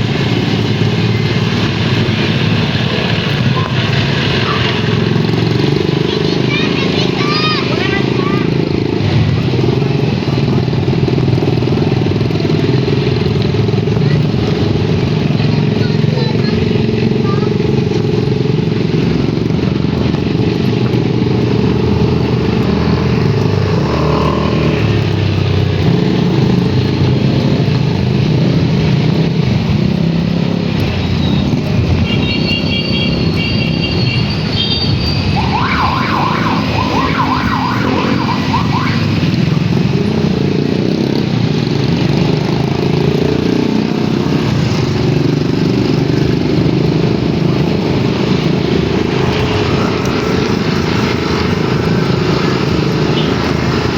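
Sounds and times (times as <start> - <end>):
motorcycle engine running: 0.0 - 53.9
high beeps and warbling tones: 34.2 - 39.5.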